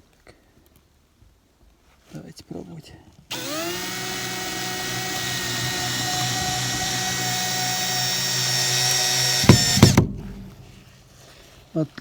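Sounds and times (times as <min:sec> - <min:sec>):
power drill driving a screw: 0:03.3 - 0:10.7.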